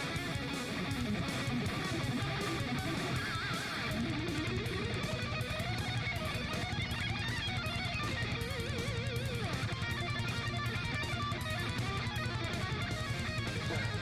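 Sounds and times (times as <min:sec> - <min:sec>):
electric guitar lead music: 0:00.0 - 0:14.0.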